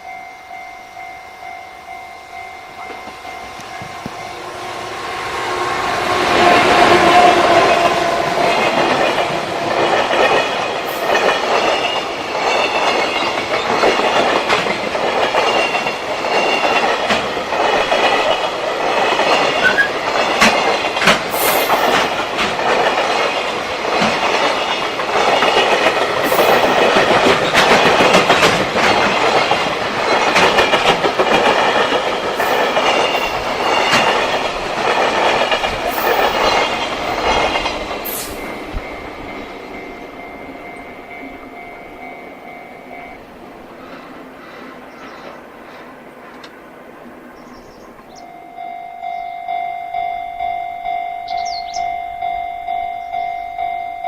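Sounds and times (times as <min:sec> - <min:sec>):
wheels clattering over rail joints: 0:06.3 - 0:41.6
metallic wheel squeal: 0:19.6 - 0:20.0.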